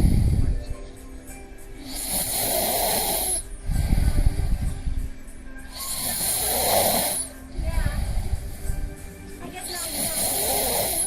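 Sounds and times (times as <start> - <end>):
man snoring: 0.0 - 0.6, 1.8 - 4.6, 5.7 - 7.4, 9.8 - 11.0
television music: 0.0 - 11.0
faint television voices: 3.8 - 11.0.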